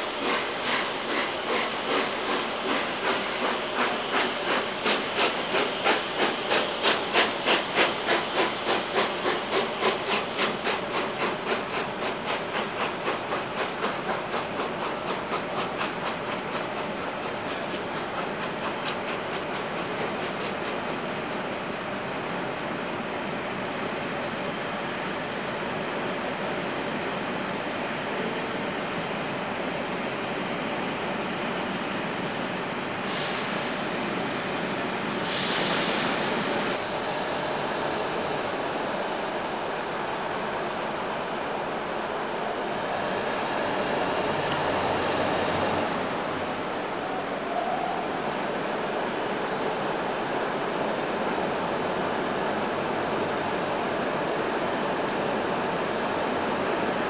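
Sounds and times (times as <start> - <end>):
steam locomotive chuffing: 0.0 - 25.1, 33.0 - 57.0
train wheels rumbling on rails: 0.0 - 57.0.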